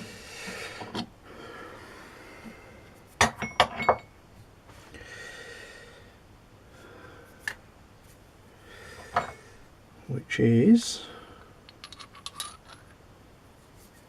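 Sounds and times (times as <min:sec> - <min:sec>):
breathing: 0:00.0 - 0:03.0, 0:04.8 - 0:07.5, 0:08.5 - 0:09.7, 0:11.0 - 0:11.6
metal tools clinking: 0:11.8 - 0:12.9.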